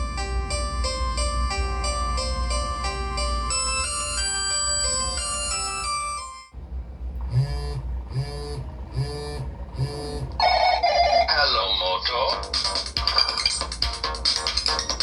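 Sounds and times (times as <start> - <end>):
melodic phone ringtone: 0.0 - 6.5, 12.3 - 15.0
ringtone short pulses: 0.5 - 6.5.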